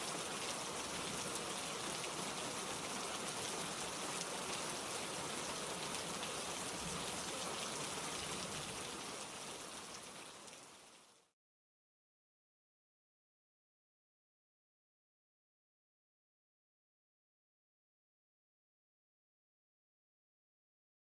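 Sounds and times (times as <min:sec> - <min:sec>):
rain falling: 0:00.0 - 0:11.3.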